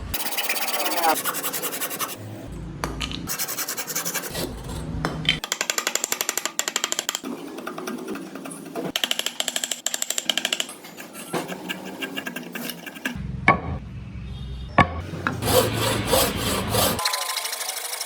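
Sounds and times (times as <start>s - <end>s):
hand tools scraping wood: 10.8s - 13.2s, 15.4s - 17.1s.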